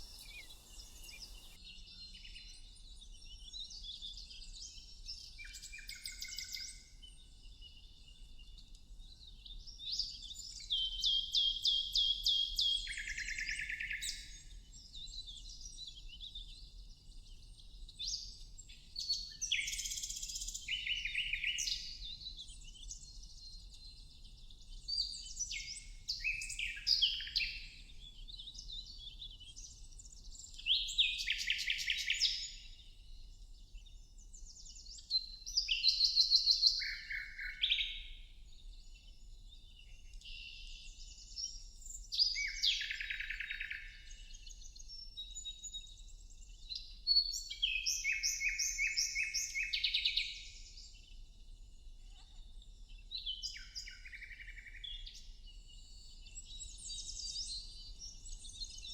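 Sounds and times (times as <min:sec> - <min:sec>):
songbird singing: 0:00.0 - 0:02.0, 0:17.7 - 0:33.7, 0:35.2 - 0:44.2, 0:46.6 - 0:58.9.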